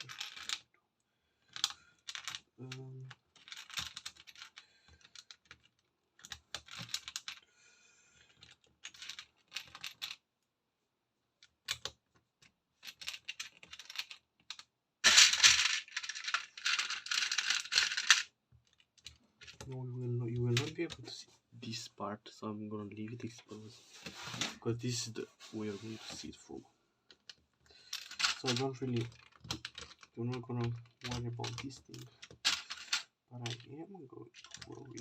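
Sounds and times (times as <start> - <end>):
plastic bricks clicking and clattering: 0.0 - 0.6, 1.5 - 7.4, 8.3 - 10.2, 11.6 - 12.0, 12.8 - 19.7, 27.1 - 35.0.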